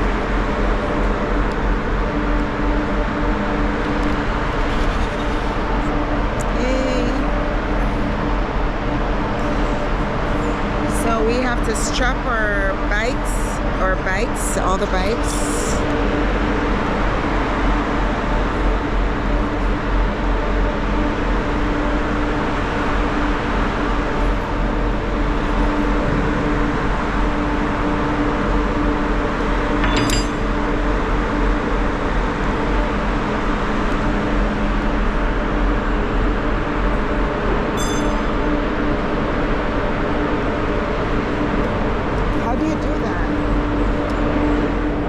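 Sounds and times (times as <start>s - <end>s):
ship machinery and ventilation drone: 0.0s - 45.0s
sharp metallic clink: 29.8s - 30.5s, 37.8s - 38.4s.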